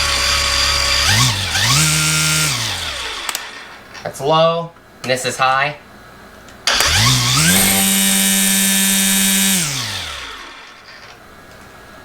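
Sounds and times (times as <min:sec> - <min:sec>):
string trimmer motor whine: 0:00.0 - 0:03.7, 0:06.7 - 0:11.1.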